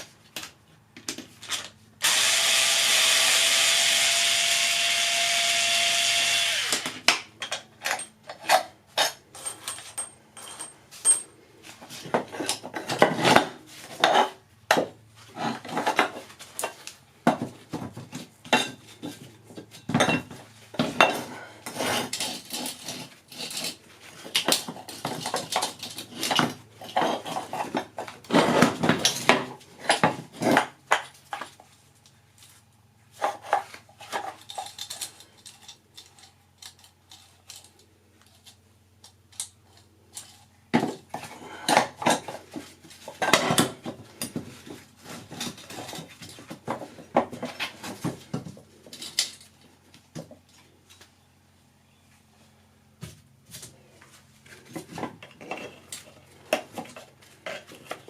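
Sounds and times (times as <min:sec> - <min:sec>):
power tool running: 0:02.0 - 0:07.0.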